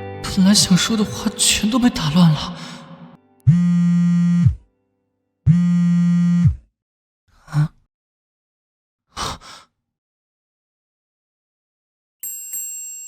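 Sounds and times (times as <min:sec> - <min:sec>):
low harsh electronic buzz: 0:03.5 - 0:04.6.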